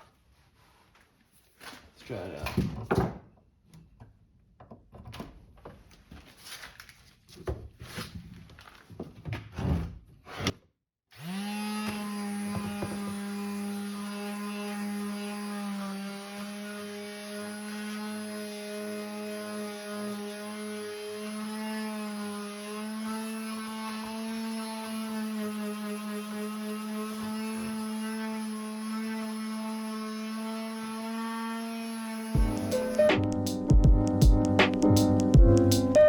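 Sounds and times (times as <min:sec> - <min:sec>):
electric sander running: 0:11.2 - 0:36.0.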